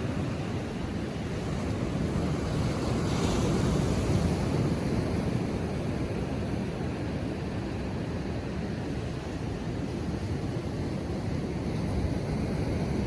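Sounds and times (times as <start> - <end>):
ocean surf breaking: 0.0 - 6.0.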